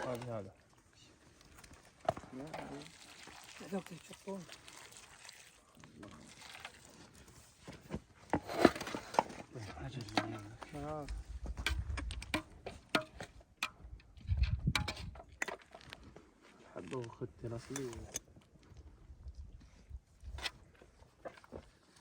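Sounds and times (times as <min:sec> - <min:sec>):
men talking indistinctly: 0:00.0 - 0:00.6, 0:09.5 - 0:11.2, 0:16.7 - 0:18.2
sharp clicks and knocks: 0:11.6 - 0:15.6.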